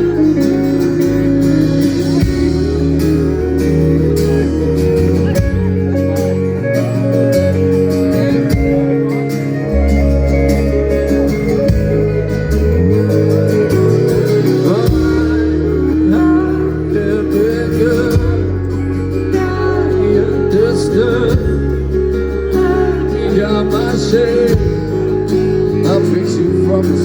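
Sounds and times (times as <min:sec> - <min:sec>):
rock band playing live: 0:00.0 - 0:27.0.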